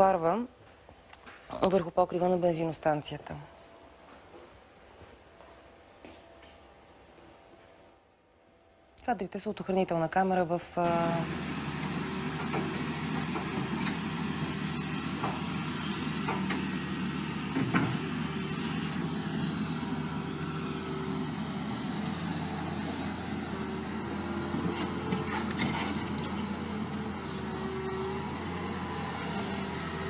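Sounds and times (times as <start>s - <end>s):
vehicle engine running: 10.8s - 30.0s.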